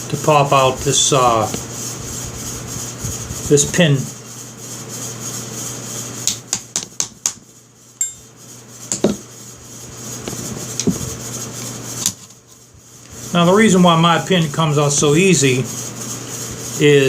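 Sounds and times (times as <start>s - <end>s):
short metallic ring: 8.0s - 8.4s.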